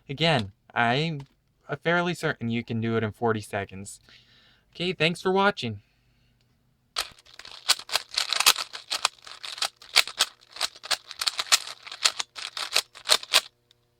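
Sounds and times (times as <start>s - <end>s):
plastic puzzle cube clicking: 7.0s - 13.5s.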